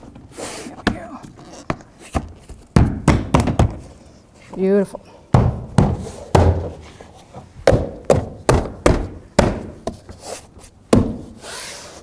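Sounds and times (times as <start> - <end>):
hand thumping door panel: 5.3 - 6.9, 7.6 - 10.1.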